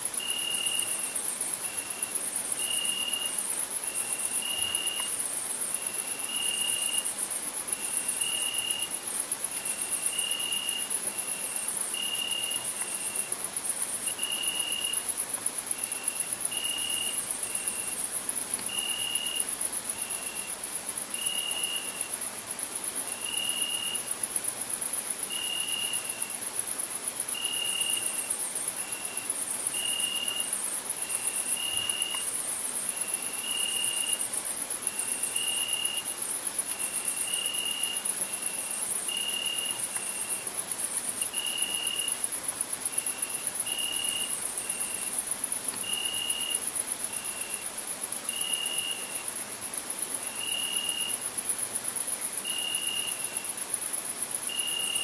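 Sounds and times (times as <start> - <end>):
cricket chirp: 0.0 - 55.0
crickets shrill trill: 18.7 - 20.6, 27.3 - 34.3, 34.9 - 42.3, 42.9 - 49.4, 50.2 - 51.2, 52.4 - 53.6, 54.4 - 55.0.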